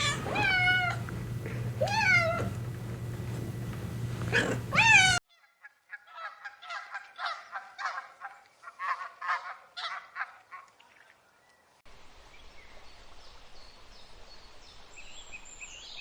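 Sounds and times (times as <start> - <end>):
cat meowing: 0.0 - 2.7, 4.2 - 5.2.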